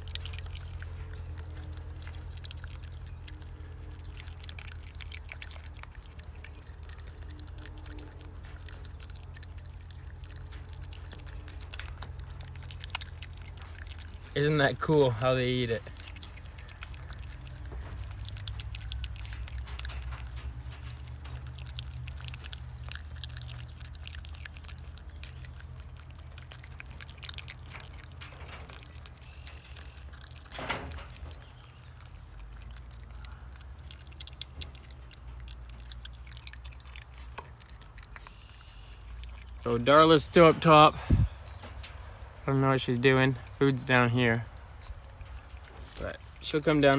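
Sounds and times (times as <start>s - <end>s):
groundhog chewing clicks: 0.0s - 46.9s
low steady rumble: 0.0s - 46.9s.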